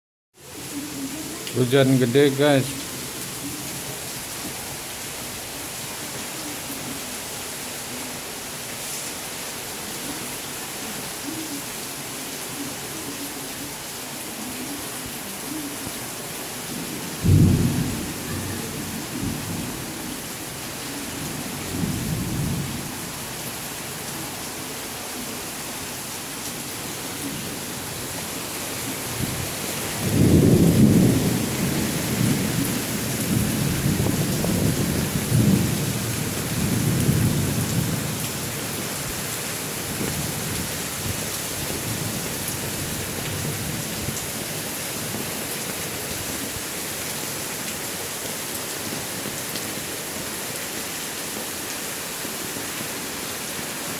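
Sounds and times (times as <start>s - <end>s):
heavy rain hissing: 0.4s - 53.9s
thunder rumble: 17.2s - 19.8s, 30.0s - 38.2s.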